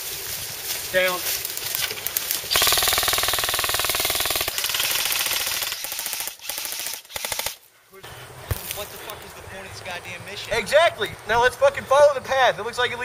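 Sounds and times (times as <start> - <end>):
airsoft gun firing full auto: 2.5 - 7.6.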